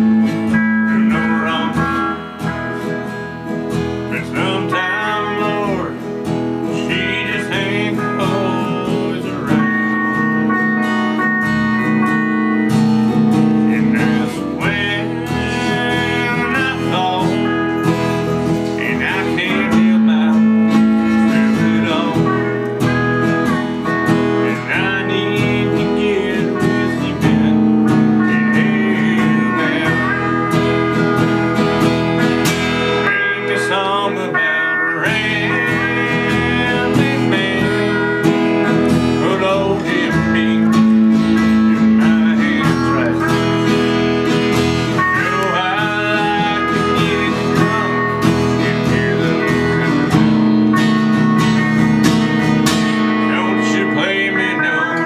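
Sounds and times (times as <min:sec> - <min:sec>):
guitar music: 0:00.0 - 0:55.0.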